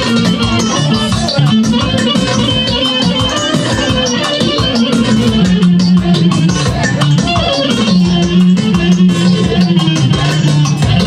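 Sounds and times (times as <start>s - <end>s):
instrumental music with drums: 0.0s - 11.0s.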